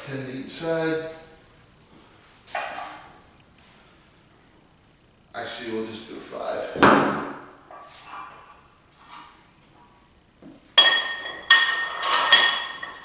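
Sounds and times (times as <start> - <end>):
weight plates handling: 2.5 - 3.2, 10.8 - 13.0
metallic clanks with ringing: 10.8 - 13.0.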